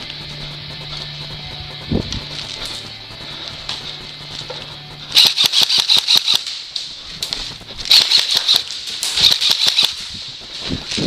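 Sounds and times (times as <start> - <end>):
airsoft rifle full-auto bursts: 5.1 - 6.9, 7.9 - 10.0.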